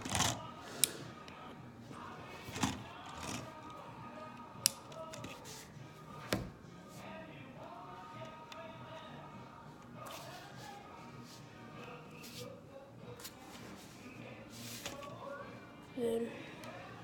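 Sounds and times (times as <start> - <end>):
faint background music: 0.0 - 17.0.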